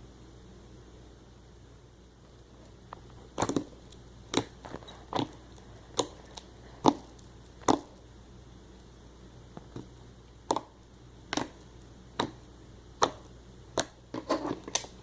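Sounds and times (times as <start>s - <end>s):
slime popping and clicking: 9.7s - 11.6s, 12.2s - 12.4s, 13.0s - 14.0s.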